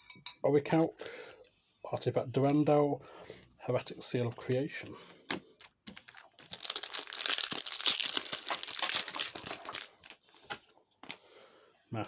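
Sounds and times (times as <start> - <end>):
foil wrapper crinkling: 5.9 - 10.2.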